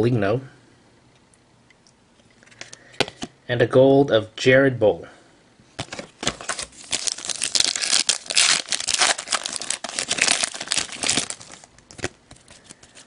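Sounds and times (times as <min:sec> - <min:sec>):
plastic wrapper tearing and crinkling: 0:05.8 - 0:13.0.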